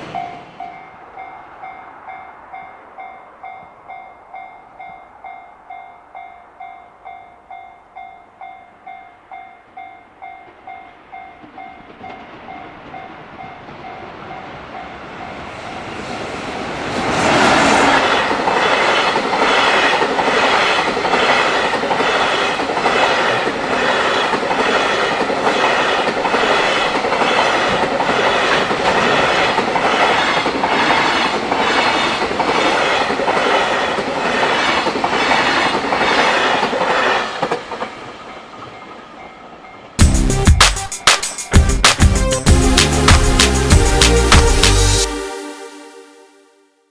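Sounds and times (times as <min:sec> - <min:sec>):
train wheels clattering: 0:17.8 - 0:44.7.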